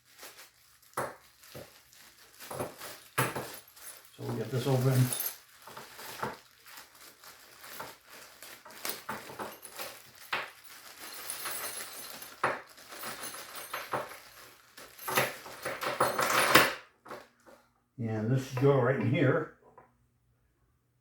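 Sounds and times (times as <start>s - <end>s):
cardboard package tearing: 0.0s - 11.2s.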